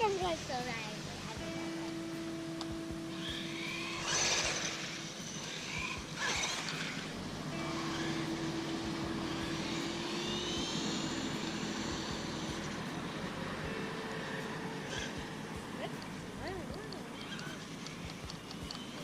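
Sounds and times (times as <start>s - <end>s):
electric motor whining: 0.0s - 19.0s.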